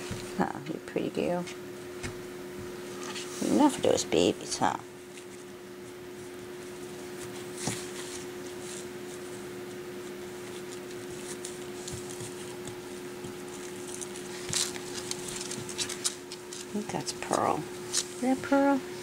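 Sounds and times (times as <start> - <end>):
steady low hum: 0.0 - 19.0
puppies rustling and clicking: 10.4 - 18.2.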